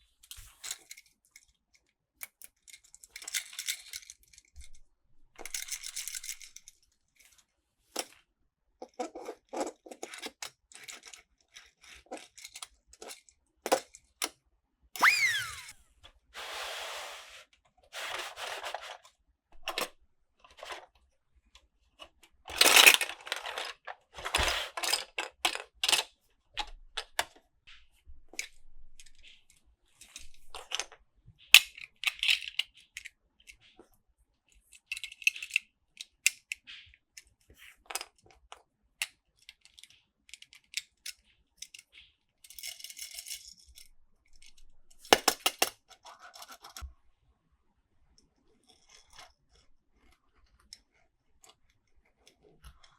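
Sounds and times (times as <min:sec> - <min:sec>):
toys clicking and clattering: 0:00.3 - 0:04.8, 0:05.4 - 0:07.3, 0:08.8 - 0:14.1, 0:22.0 - 0:33.8, 0:34.7 - 0:46.9, 0:48.6 - 0:52.9.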